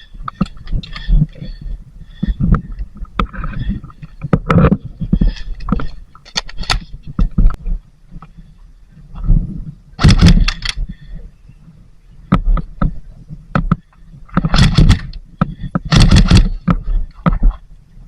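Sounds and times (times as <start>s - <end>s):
wind rumble: 0.0s - 18.0s
gear handling: 2.2s - 7.6s
airsoft guns firing: 15.9s - 16.5s.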